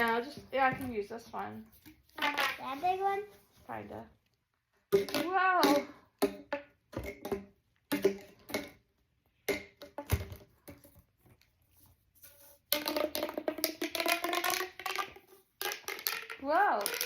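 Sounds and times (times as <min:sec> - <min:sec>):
plastic pop tubes popping: 0:01.8 - 0:02.7, 0:04.9 - 0:11.5, 0:12.6 - 0:17.0.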